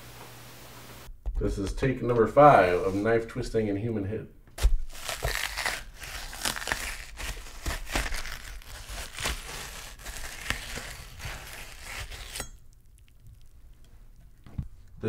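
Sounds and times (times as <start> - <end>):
wet crunching and crackling: 4.6 - 15.0.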